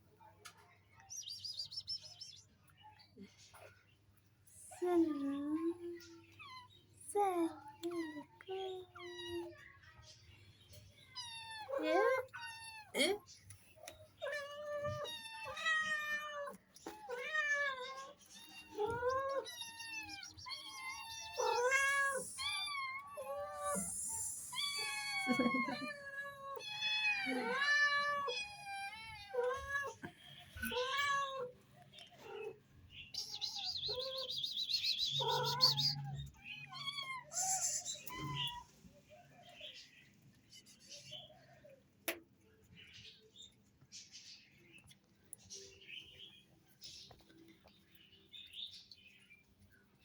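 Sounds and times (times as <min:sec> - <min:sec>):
cat meowing: 0:14.2 - 0:31.6, 0:35.0 - 0:38.7.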